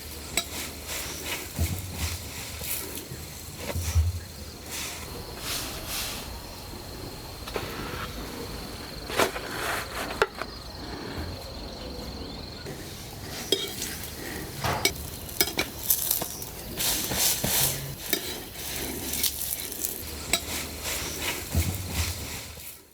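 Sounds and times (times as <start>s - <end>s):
metal utensils clinking on dishes: 0.2s - 1.8s, 13.2s - 22.1s.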